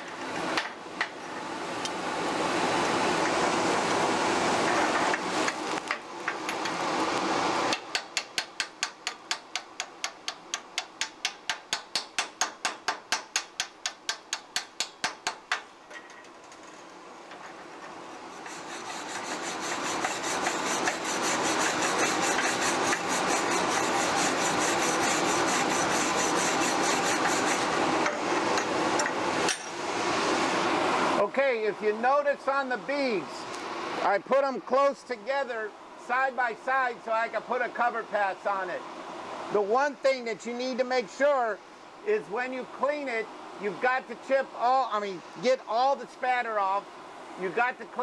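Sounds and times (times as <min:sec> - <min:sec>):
sharp knocking and brushing strokes: 0:07.7 - 0:15.7, 0:18.2 - 0:28.7.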